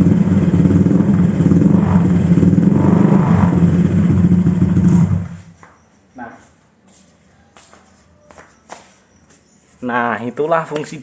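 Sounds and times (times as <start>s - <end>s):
scooter engine running loudly: 0.0s - 5.6s.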